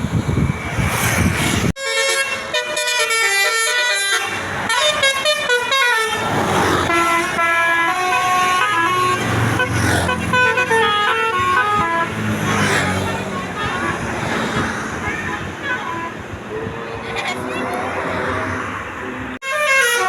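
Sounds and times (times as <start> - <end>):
musical bus horn melody: 1.8 - 14.3, 19.4 - 20.0.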